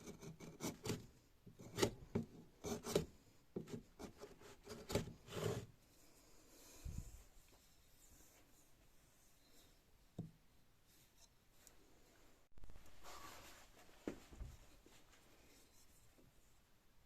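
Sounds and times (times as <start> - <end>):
chisel scraping: 0.0 - 5.7.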